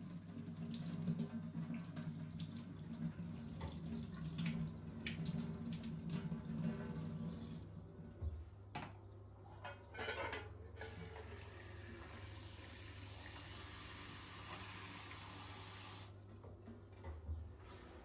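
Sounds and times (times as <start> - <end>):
dishes and utensils clattering: 9.6 - 10.7.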